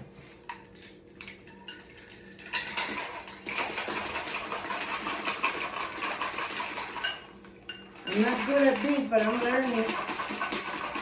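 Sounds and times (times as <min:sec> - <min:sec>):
ice rattling in a shaker: 0:02.4 - 0:07.2, 0:08.0 - 0:11.0.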